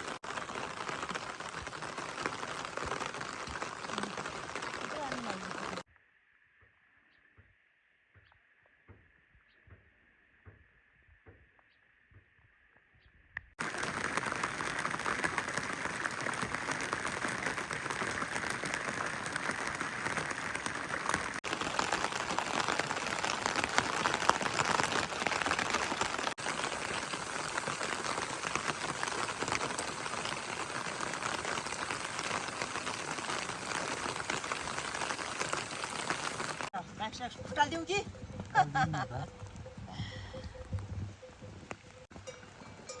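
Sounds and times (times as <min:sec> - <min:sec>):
rain falling: 0:00.0 - 0:05.9, 0:13.6 - 0:36.7.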